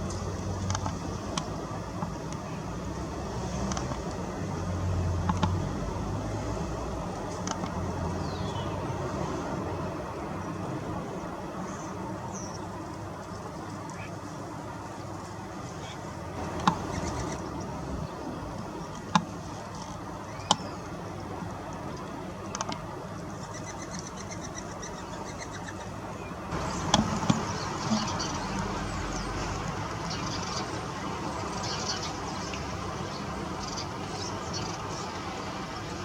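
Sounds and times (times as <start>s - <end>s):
steady background hiss: 0.0s - 36.0s
small birds chirping: 7.3s - 9.5s, 15.8s - 19.1s, 20.0s - 21.0s, 22.4s - 36.0s.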